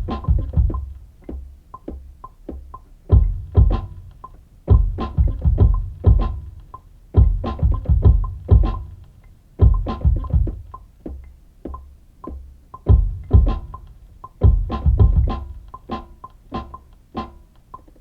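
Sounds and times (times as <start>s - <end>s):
heavy kick drum hits: 12.9s - 13.7s.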